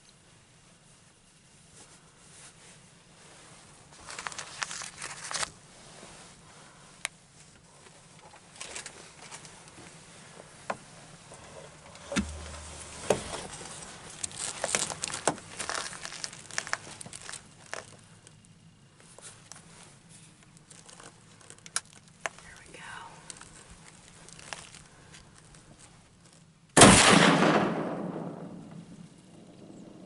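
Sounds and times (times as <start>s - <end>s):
clothing and gear rustling: 1.6s - 18.2s, 19.0s - 26.6s
heavy low thump: 12.0s - 13.6s
sharp knock: 12.1s - 13.2s.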